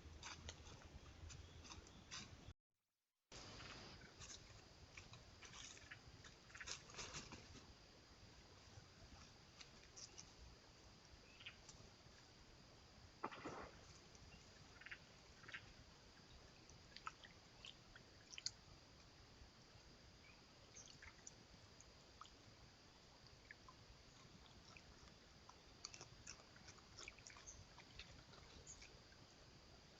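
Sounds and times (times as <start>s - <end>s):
animal feeding crunches and clicks: 0.1s - 2.4s, 3.6s - 7.6s, 13.2s - 15.7s, 16.6s - 18.6s, 23.2s - 29.3s.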